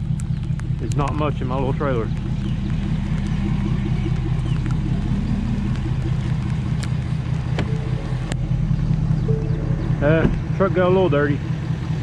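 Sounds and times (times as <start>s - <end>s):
pickup engine idling: 0.0s - 12.0s
sharp clicks: 2.1s - 9.1s.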